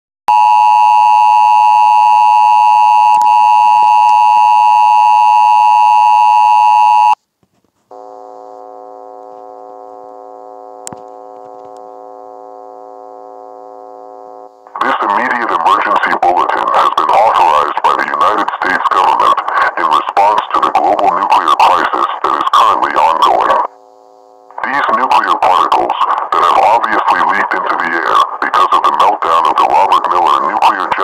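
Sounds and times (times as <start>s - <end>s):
electronic alarm tone: 0.3s - 7.2s, 7.9s - 14.5s.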